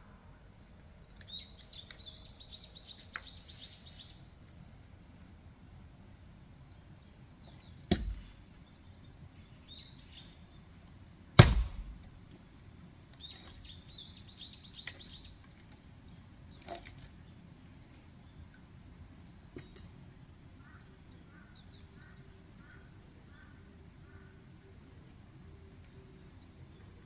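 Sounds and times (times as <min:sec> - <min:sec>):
small birds chirping: 0:00.8 - 0:11.1, 0:12.3 - 0:27.0
axe splitting firewood: 0:07.9 - 0:08.4, 0:11.4 - 0:12.1.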